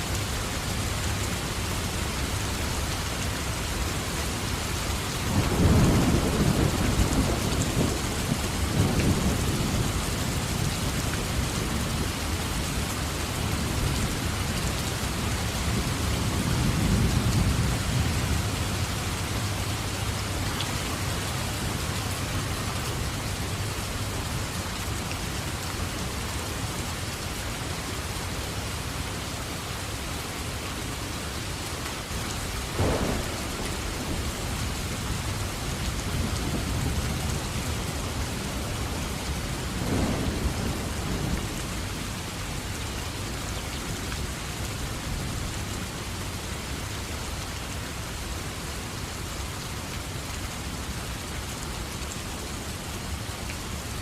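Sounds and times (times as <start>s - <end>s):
heavy rain: 0.0s - 54.0s
thunder rumble: 32.7s - 42.7s
sharp thunder claps: 32.8s - 35.4s, 39.8s - 41.9s.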